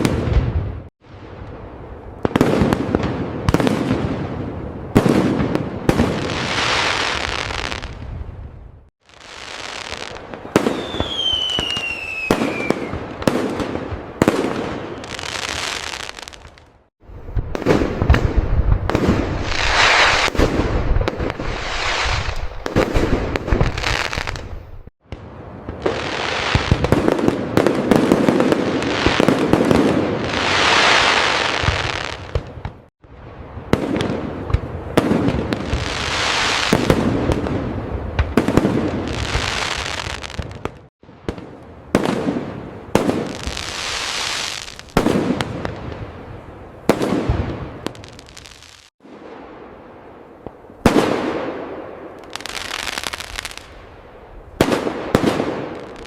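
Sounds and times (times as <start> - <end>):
fireworks bursting and crackling: 0.0 - 56.0
falling firework whistle: 9.6 - 13.1.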